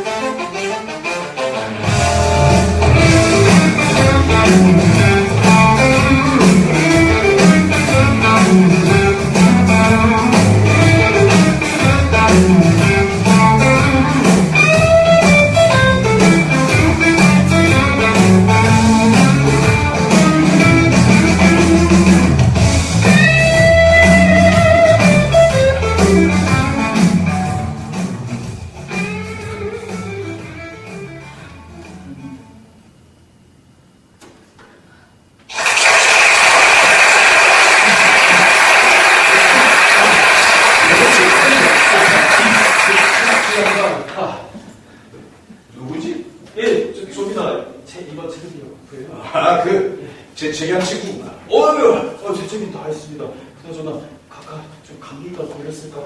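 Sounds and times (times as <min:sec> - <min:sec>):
guitar-led music: 0:00.0 - 0:32.6
steady bass line: 0:01.8 - 0:31.5.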